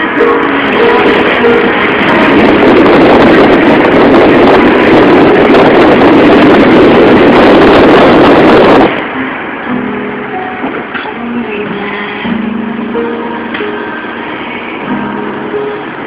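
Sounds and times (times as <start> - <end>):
music: 0.0 - 5.5, 8.9 - 16.0
wind buffeting microphone: 0.0 - 9.8.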